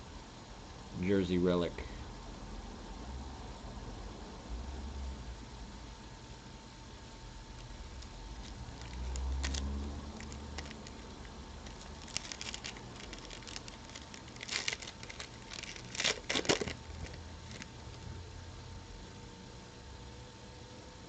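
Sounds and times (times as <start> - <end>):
card packaging tearing and crinkling: 7.6 - 18.0
cards being handled: 7.6 - 18.0.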